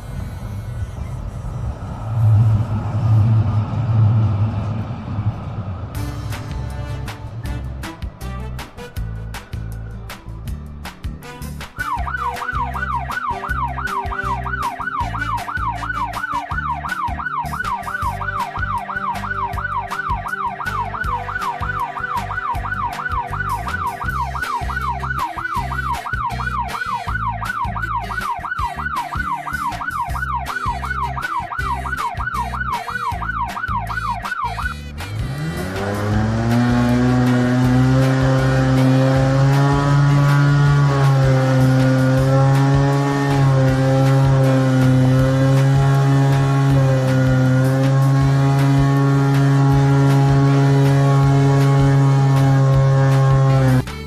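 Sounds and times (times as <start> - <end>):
low rumble: 0.0 - 11.6
vehicle engine revving: 0.0 - 54.0
emergency siren yelping: 11.7 - 53.8.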